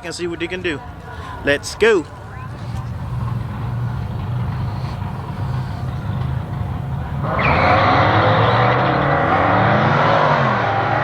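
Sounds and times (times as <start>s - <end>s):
race cars idling: 0.5s - 9.1s
engine roar and tire spin: 2.2s - 11.0s.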